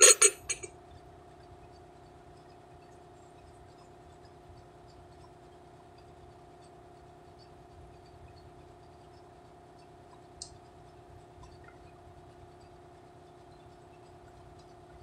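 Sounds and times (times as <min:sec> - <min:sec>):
low mechanical hum: 0:00.0 - 0:15.0
faint ticks: 0:00.9 - 0:15.0.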